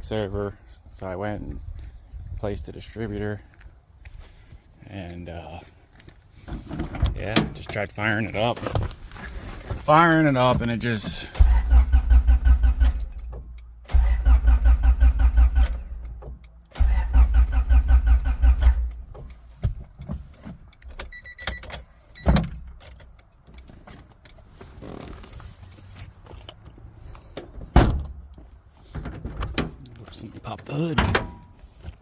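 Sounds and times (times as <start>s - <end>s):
engine cranking on starter: 11.3s - 13.2s, 13.9s - 19.1s.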